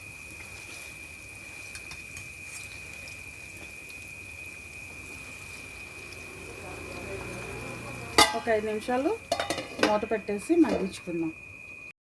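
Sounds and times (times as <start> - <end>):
prawns sizzling in hot oil: 0.0 - 11.8
faint pops and crackles: 1.6 - 4.1.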